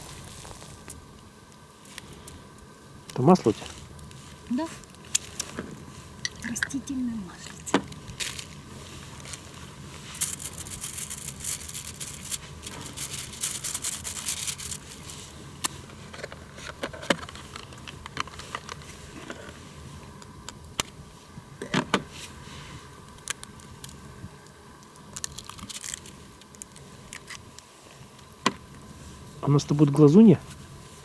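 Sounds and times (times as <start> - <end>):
aluminium foil crinkling: 0.0 - 1.0, 3.1 - 19.5, 23.0 - 28.4.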